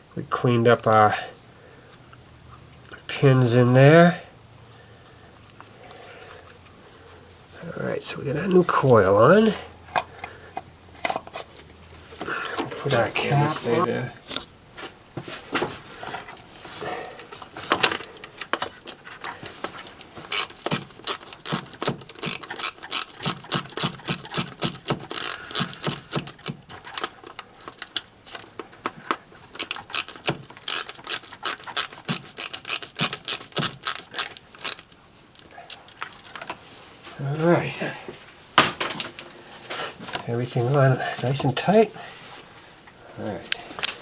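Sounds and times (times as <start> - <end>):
hand ratchet clicking: 19.9 - 28.0, 29.5 - 36.4.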